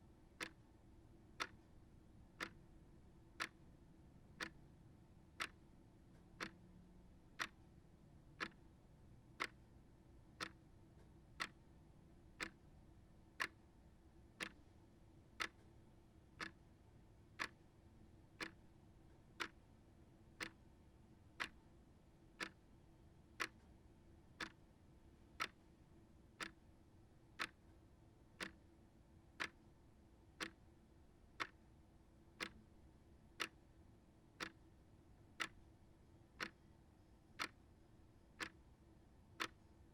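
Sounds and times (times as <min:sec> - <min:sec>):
clock ticking: 0:02.4 - 0:02.6, 0:05.4 - 0:05.6, 0:06.4 - 0:06.6, 0:07.4 - 0:07.6, 0:08.4 - 0:08.6, 0:09.4 - 0:09.6, 0:12.4 - 0:12.6, 0:14.4 - 0:14.6, 0:15.4 - 0:15.6, 0:16.4 - 0:16.6, 0:17.4 - 0:17.6, 0:18.4 - 0:18.6, 0:22.4 - 0:22.6, 0:23.4 - 0:23.7, 0:24.4 - 0:24.6, 0:25.4 - 0:25.6, 0:27.4 - 0:27.6, 0:28.4 - 0:28.6, 0:29.4 - 0:29.6, 0:30.4 - 0:30.6, 0:32.4 - 0:32.6, 0:33.4 - 0:33.6, 0:34.4 - 0:34.6, 0:36.4 - 0:36.6, 0:37.4 - 0:37.6, 0:39.4 - 0:39.6.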